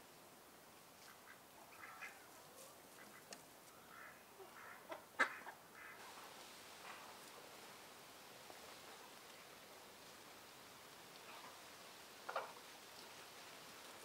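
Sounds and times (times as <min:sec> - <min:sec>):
faint bird calls: 0:01.0 - 0:06.1.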